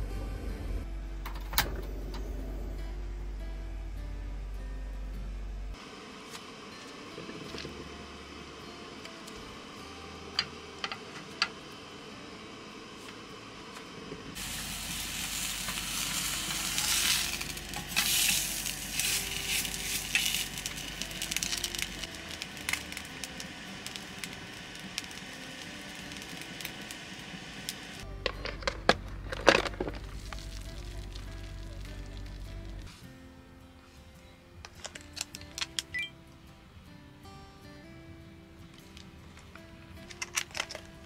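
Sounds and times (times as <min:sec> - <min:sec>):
food frying in a pan: 0:14.4 - 0:28.1.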